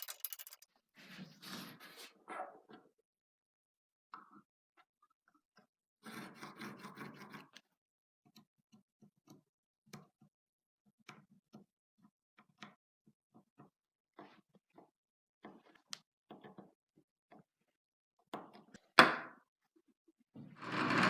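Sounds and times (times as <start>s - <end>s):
scraping rattle: 0.0s - 0.6s
small hard objects clicking: 0.0s - 0.6s.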